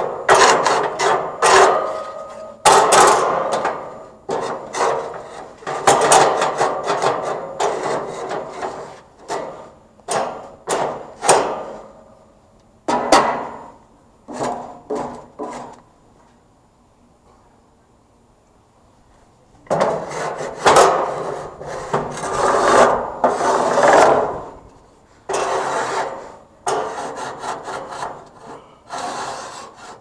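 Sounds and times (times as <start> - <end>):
barbecue grill being scraped: 0.0 - 11.8, 14.3 - 15.8, 19.7 - 30.0.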